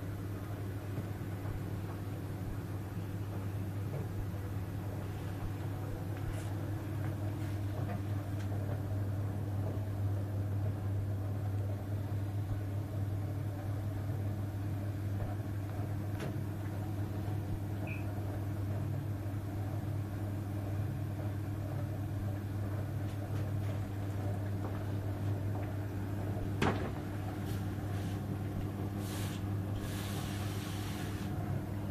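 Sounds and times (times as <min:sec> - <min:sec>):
gas boiler humming: 0:00.0 - 0:31.9
boiler kettling crackle: 0:23.1 - 0:31.9.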